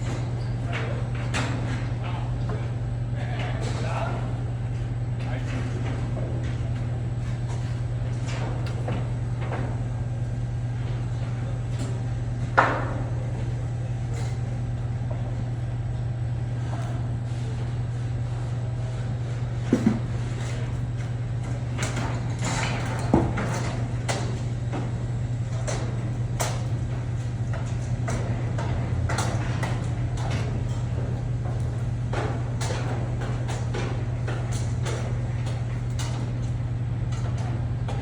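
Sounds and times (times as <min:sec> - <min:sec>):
low machine hum: 0:00.0 - 0:38.0.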